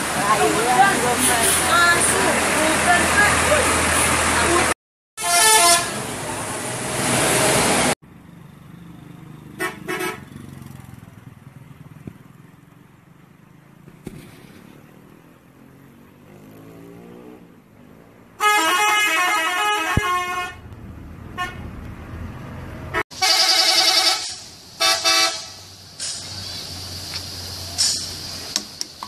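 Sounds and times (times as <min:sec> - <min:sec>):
bus horn double toot: 0:05.2 - 0:06.1, 0:09.6 - 0:10.3, 0:18.4 - 0:20.6, 0:21.4 - 0:21.6, 0:22.9 - 0:25.7
bus musical horn tune: 0:05.2 - 0:06.2, 0:18.4 - 0:20.6, 0:21.4 - 0:21.6, 0:22.9 - 0:25.6.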